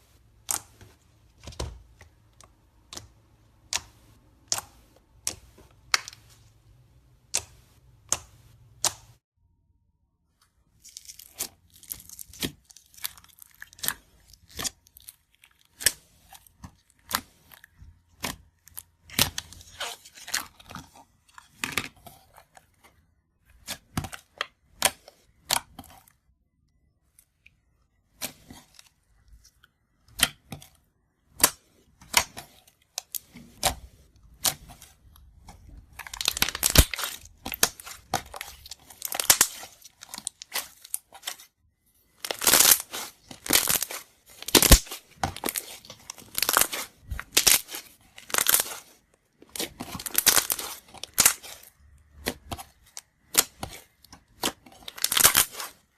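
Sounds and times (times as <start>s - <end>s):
slime popping and crackling: 10.8s - 20.8s, 34.3s - 41.4s, 42.2s - 55.8s.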